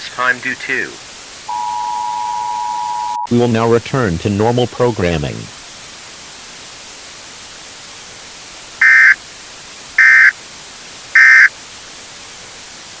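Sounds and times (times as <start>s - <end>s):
static hiss: 0.0s - 2.4s, 3.3s - 13.0s
digital data tone bursts: 8.8s - 9.2s, 10.0s - 10.3s, 11.2s - 11.5s.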